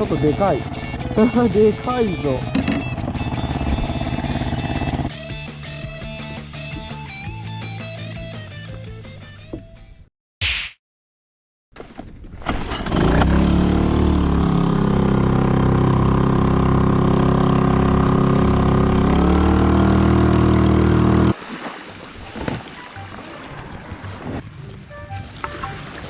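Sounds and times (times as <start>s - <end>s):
small outboard motor running: 0.0s - 5.3s, 12.6s - 21.4s.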